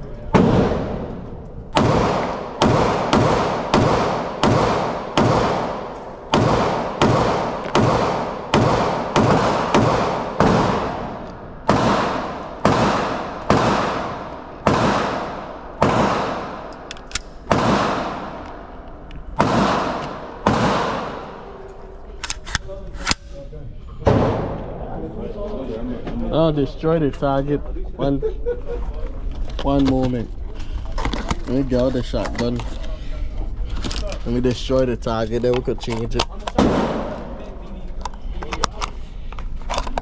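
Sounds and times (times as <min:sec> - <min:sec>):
echoing gunshots: 0:00.3 - 0:21.6, 0:36.6 - 0:37.5.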